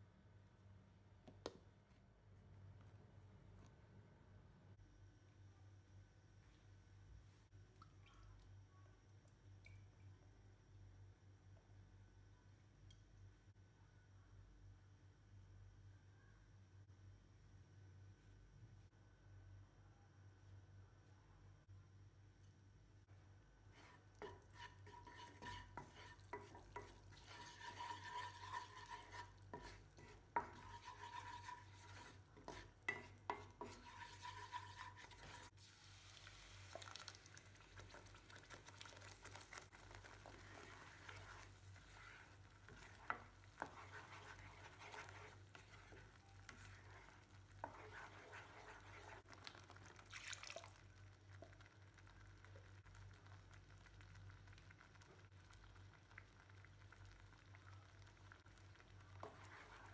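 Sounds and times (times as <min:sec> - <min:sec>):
spoon scraping a pan: 0:23.7 - 0:35.6, 0:37.6 - 0:49.6, 0:59.2 - 0:59.9
food sizzling: 0:23.7 - 0:59.9.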